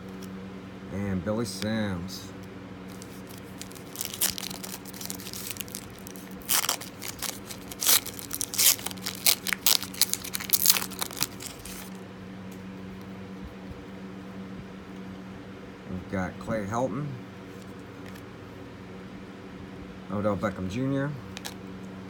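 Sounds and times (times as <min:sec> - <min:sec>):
foil wrapper tearing and crinkling: 0:02.9 - 0:12.0.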